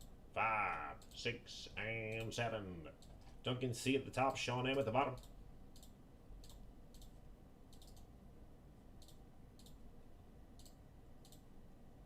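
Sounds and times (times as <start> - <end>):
computer mouse clicks: 4.7 - 8.1, 9.0 - 9.8, 10.5 - 11.5.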